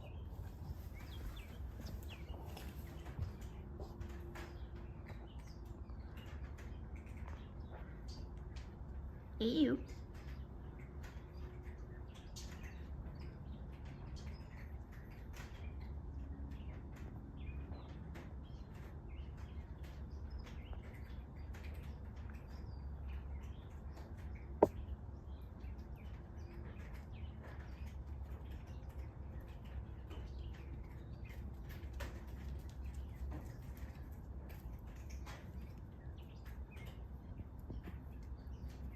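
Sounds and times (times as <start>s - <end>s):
birds chirping: 0.0s - 31.5s, 32.6s - 38.9s.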